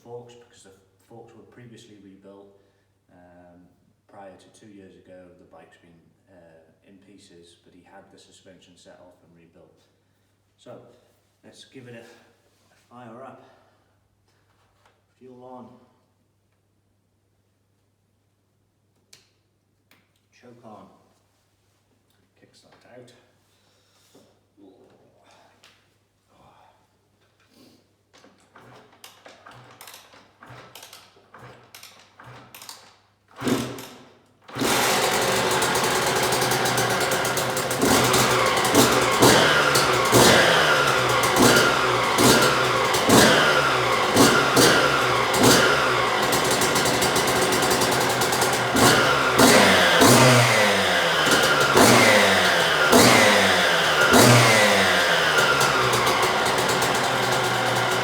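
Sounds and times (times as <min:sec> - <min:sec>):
two-stroke engine revving: 0:33.4 - 0:58.0.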